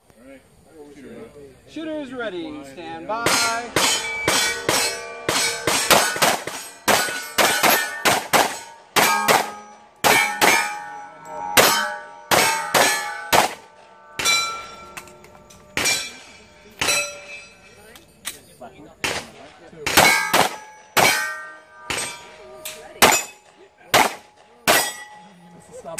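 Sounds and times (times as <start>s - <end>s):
bullets clanging on steel plates: 3.2s - 25.9s
gunshots: 3.3s - 10.9s, 11.6s - 14.6s, 19.0s - 22.3s, 23.0s - 25.0s.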